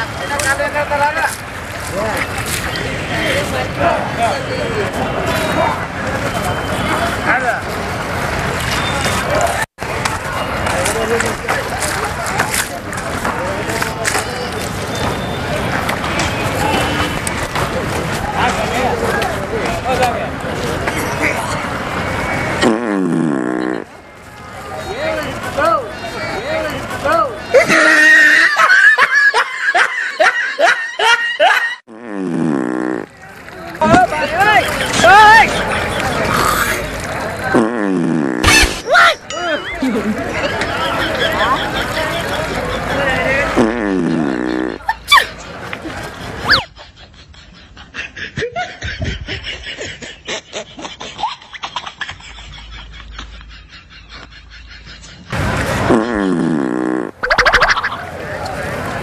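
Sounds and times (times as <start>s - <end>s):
prank fart noise: 22.5s - 23.9s, 31.9s - 33.1s, 37.4s - 38.8s, 43.4s - 45.2s, 55.4s - 58.0s
people laughing: 27.4s - 31.8s, 33.9s - 37.4s, 38.9s - 55.9s, 57.2s - 58.4s.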